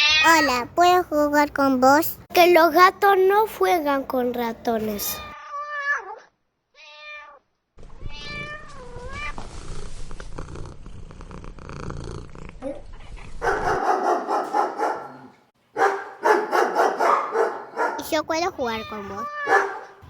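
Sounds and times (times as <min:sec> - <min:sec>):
cat meowing: 0:00.0 - 0:00.5, 0:05.0 - 0:07.4, 0:08.0 - 0:09.5, 0:18.7 - 0:20.0
low purr: 0:08.2 - 0:13.7.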